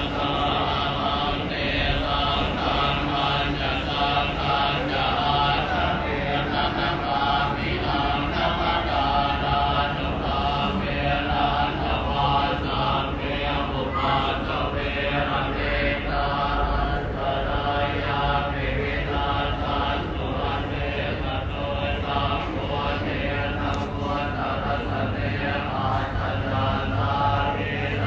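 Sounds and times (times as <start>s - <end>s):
monks chanting in a drone: 0.0s - 28.0s.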